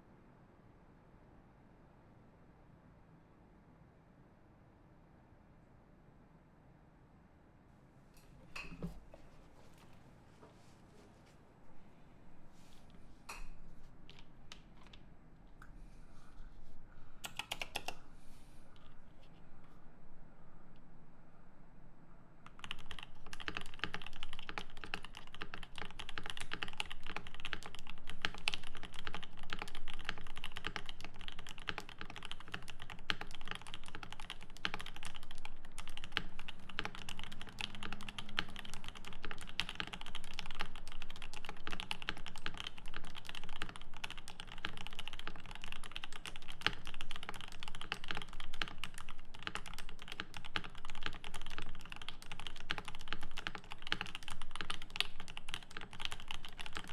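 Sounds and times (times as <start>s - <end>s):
fast typing on mechanical keyboard: 17.2s - 18.1s, 22.5s - 56.9s.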